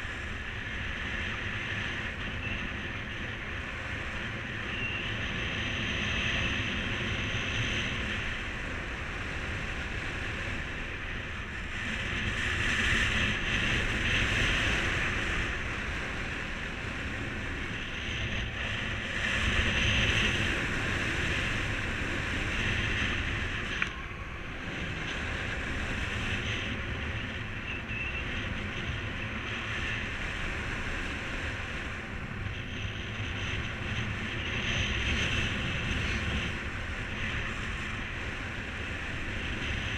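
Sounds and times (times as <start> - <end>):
wind rushing over microphone: 0.0 - 39.9.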